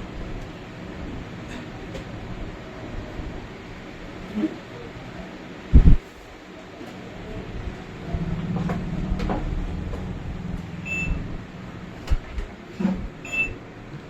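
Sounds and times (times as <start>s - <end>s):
short electronic beeps: 10.8s - 11.3s, 13.2s - 13.6s.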